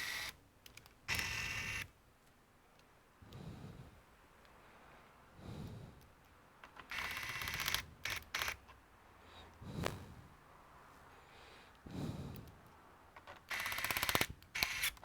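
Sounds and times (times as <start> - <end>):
screwdriver clicking: 13.2 - 15.0.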